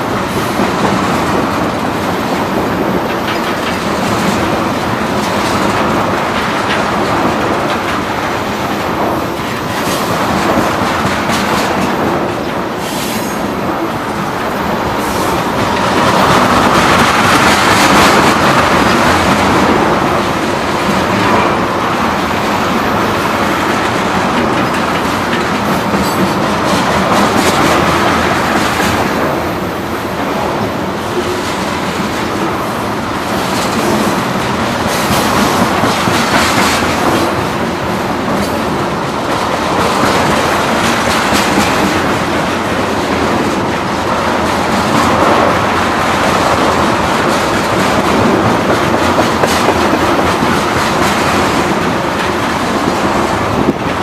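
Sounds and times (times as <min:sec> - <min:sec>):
train wheels rumbling on rail: 0:00.0 - 0:54.0
wheels clicking over rail joints: 0:00.0 - 0:54.0.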